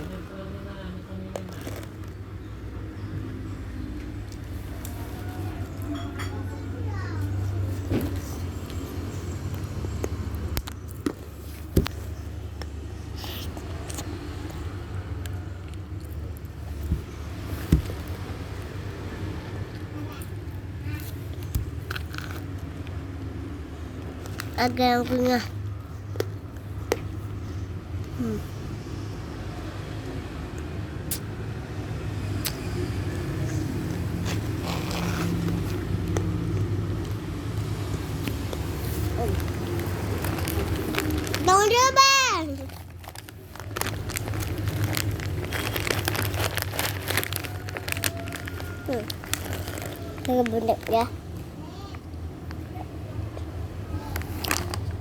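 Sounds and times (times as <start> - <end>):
low mechanical hum: 0.0 - 55.0.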